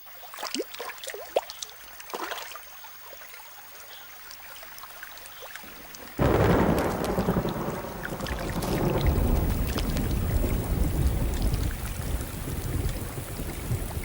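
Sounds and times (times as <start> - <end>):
heavy rain downpour: 6.0 - 14.0
thunder rumble: 6.2 - 14.0.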